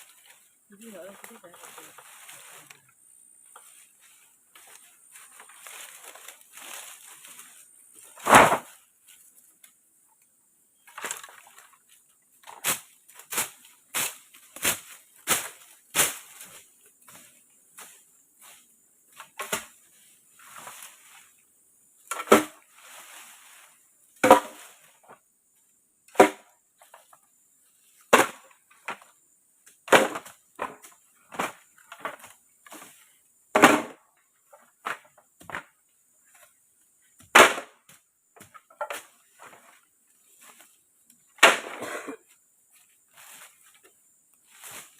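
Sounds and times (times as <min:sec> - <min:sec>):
tool chopping wood: 0:37.3 - 0:37.7.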